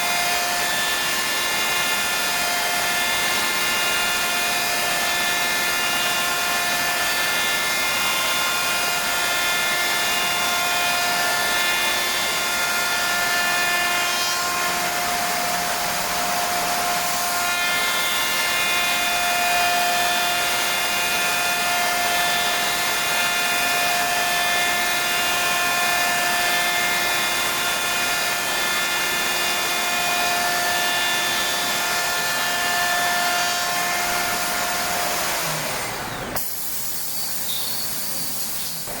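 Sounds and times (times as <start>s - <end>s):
hiss of cutting and air: 36.4s - 39.0s.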